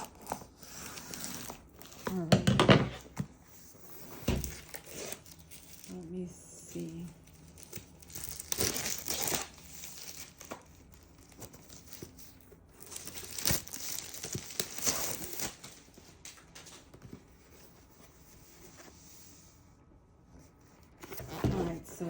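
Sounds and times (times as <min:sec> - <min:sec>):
packaging torn and crinkled: 0:04.6 - 0:06.0, 0:06.8 - 0:16.8.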